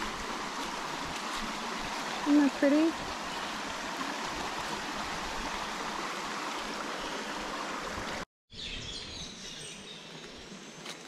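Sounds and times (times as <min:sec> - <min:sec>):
creek water rushing: 0:00.0 - 0:08.2.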